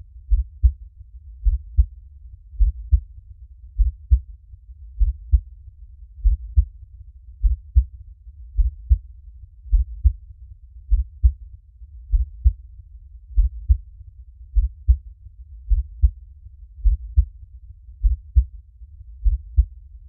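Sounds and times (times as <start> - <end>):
heartbeat double thumps: 0.3 - 0.8, 1.4 - 1.9, 2.6 - 3.1, 3.8 - 4.3, 5.0 - 5.5, 6.2 - 6.7, 7.4 - 7.9, 8.6 - 9.1, 9.7 - 10.2, 10.9 - 11.4, 12.1 - 12.6, 13.3 - 13.8, 14.5 - 15.0, 15.7 - 16.2, 16.8 - 17.3, 18.0 - 18.5, 19.2 - 19.7.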